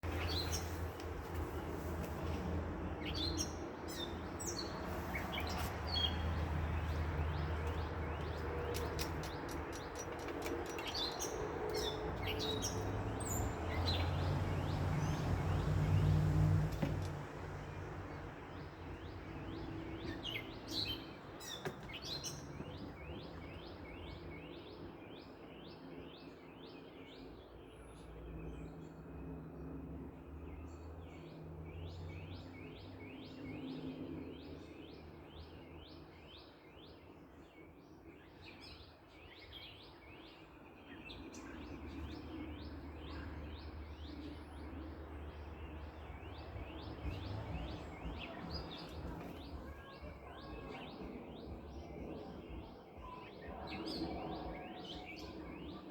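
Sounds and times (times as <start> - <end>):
distant traffic rumble: 0.0 - 55.9
bird chirping: 3.0 - 17.0.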